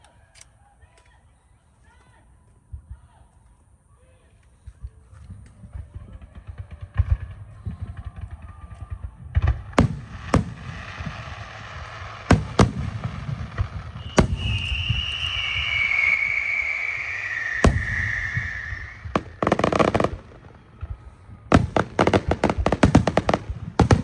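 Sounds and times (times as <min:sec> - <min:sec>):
fireworks crackle: 0:05.1 - 0:24.0
fireworks low thumps: 0:05.3 - 0:24.0
fireworks sharp bangs: 0:05.8 - 0:24.0
falling high whistle: 0:13.9 - 0:19.9.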